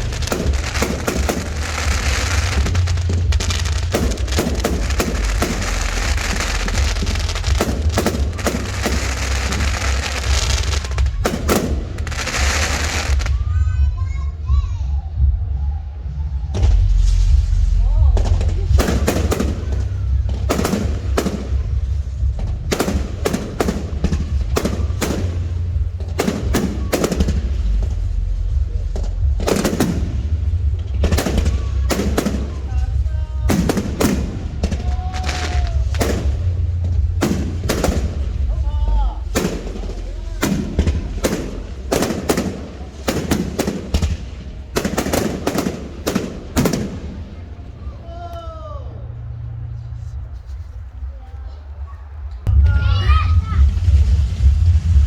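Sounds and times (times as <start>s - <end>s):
fireworks bangs: 0.0s - 48.4s, 49.0s - 55.0s
steady low rumble: 0.0s - 55.0s.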